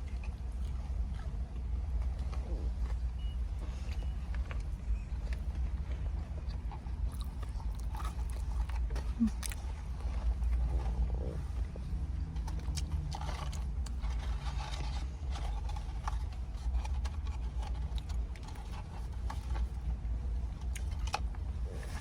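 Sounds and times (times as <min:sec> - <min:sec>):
chewing with mouth clicks: 0:00.0 - 0:22.0.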